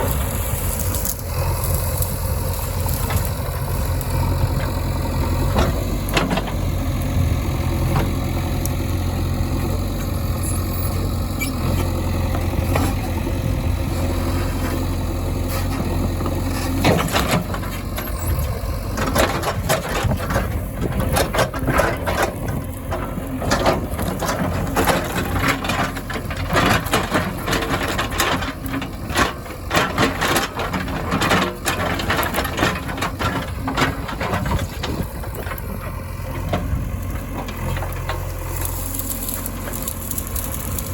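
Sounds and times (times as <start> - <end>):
diesel engine idling: 0.0 - 40.9
irregular knocks and clatter: 4.5 - 6.7, 15.6 - 18.2, 18.9 - 40.9.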